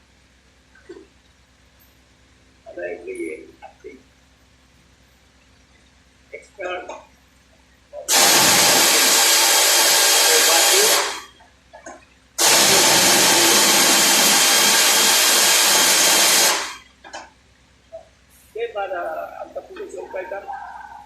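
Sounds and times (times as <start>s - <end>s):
compressed air hissing: 8.1s - 11.4s, 12.4s - 16.9s.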